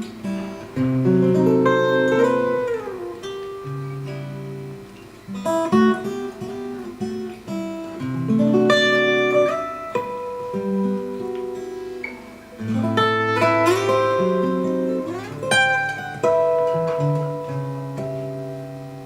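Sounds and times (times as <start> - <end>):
acoustic guitar music: 0.0 - 19.0.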